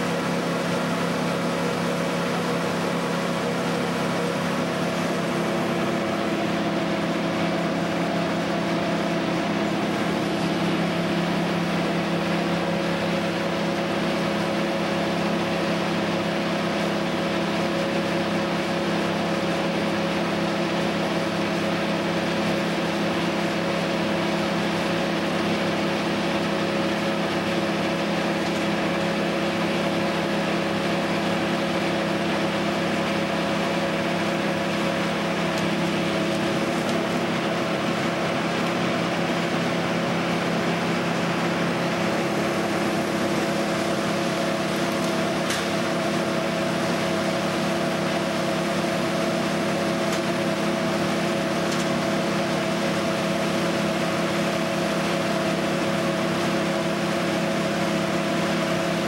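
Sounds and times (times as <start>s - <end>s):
engine running steadily: 0.0s - 59.0s.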